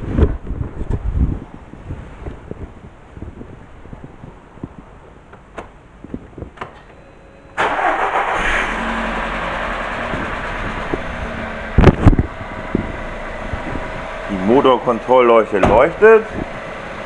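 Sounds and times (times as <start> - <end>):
car engine starting and idling: 6.6 - 17.0.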